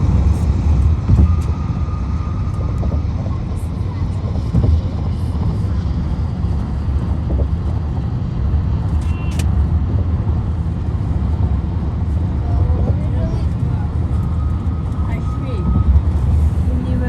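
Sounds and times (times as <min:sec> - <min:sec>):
car tyres and engine rumble: 0:00.0 - 0:17.0
brief high click: 0:09.0 - 0:09.5.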